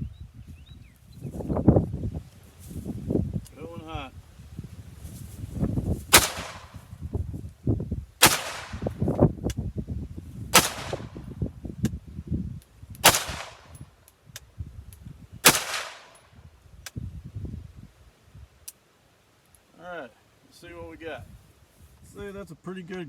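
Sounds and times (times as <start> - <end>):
rifle shots with ringing tail: 6.1 - 6.8, 8.2 - 8.9, 10.6 - 11.2, 13.0 - 13.8, 15.4 - 16.3.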